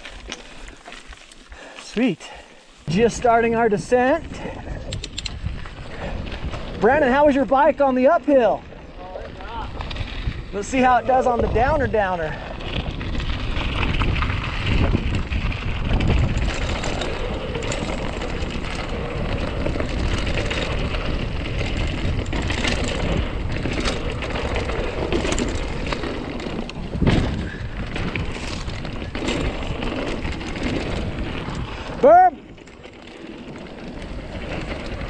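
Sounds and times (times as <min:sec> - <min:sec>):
bike tyres rolling on gravel: 0:00.0 - 0:35.0
wind on microphone: 0:04.2 - 0:07.3, 0:08.6 - 0:32.1
bike rattles and knocks: 0:11.5 - 0:35.0.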